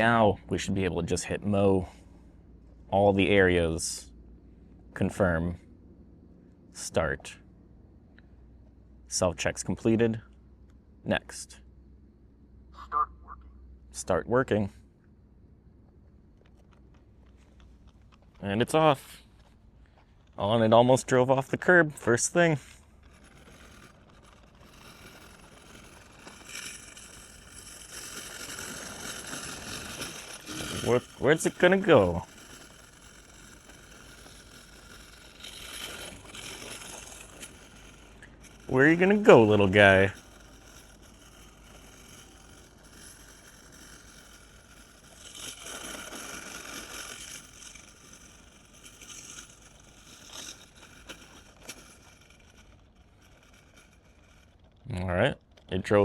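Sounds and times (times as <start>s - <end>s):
robotic lawn mower whirring: 16.4s - 56.0s.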